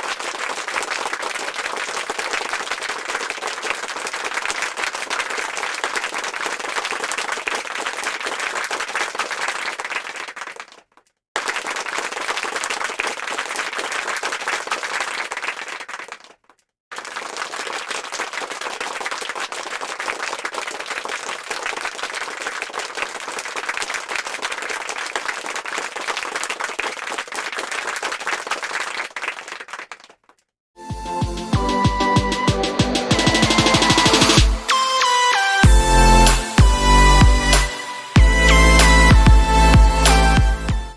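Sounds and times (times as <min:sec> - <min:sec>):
crowd clapping: 0:00.0 - 0:30.5, 0:32.8 - 0:40.9.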